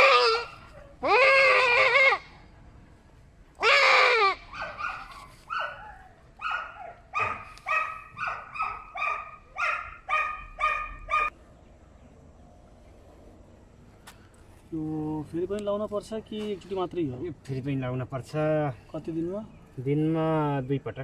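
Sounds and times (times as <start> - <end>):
goat screaming in pain: 0.0 - 2.4, 3.6 - 5.0.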